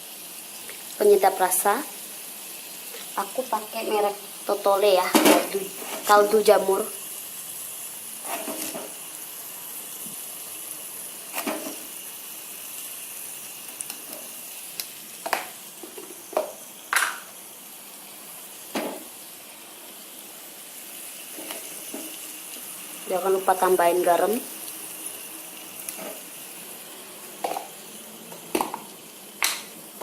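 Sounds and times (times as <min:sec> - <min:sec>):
spice paste sizzling in a frying pan: 0:00.0 - 0:30.0
spatula scraping a pan: 0:08.2 - 0:09.0.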